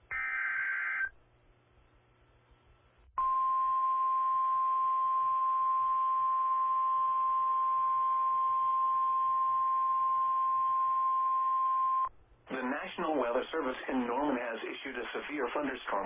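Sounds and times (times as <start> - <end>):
steady high alarm tone: 0.1 - 1.1
radio hiss: 12.5 - 16.0.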